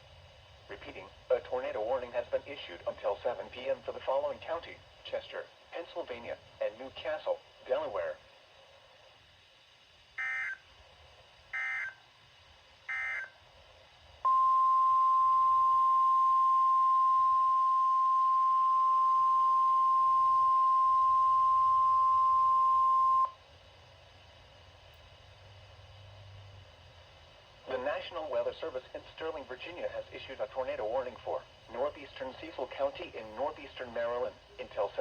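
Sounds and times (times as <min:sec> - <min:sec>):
digital data tone bursts: 0:10.2 - 0:10.6, 0:11.6 - 0:12.0, 0:12.9 - 0:13.3
steady warning alarm tone: 0:10.2 - 0:10.7, 0:11.5 - 0:12.0, 0:12.8 - 0:13.4, 0:14.2 - 0:23.4.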